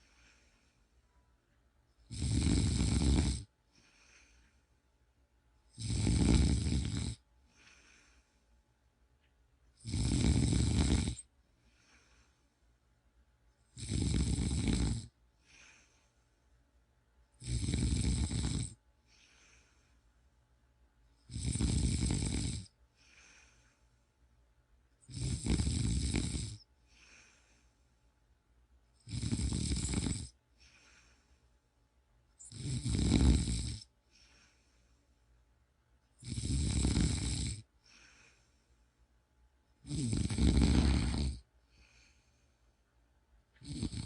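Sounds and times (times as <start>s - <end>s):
person snoring: 2.0s - 4.4s, 5.7s - 8.2s, 9.8s - 12.4s, 13.7s - 16.0s, 17.4s - 19.9s, 21.3s - 23.8s, 25.0s - 27.7s, 29.0s - 31.2s, 32.4s - 34.7s, 36.2s - 38.5s, 39.8s - 42.3s, 43.6s - 44.0s.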